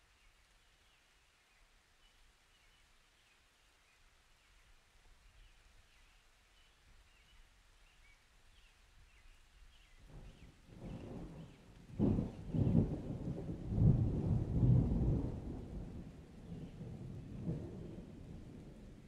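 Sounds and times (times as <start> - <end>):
distant thunder rumble: 10.1 - 19.0.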